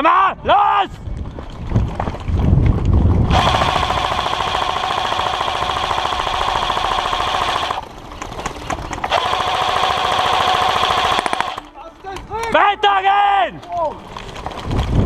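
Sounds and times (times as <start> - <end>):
airsoft gun full-auto bursts: 3.3 - 11.8.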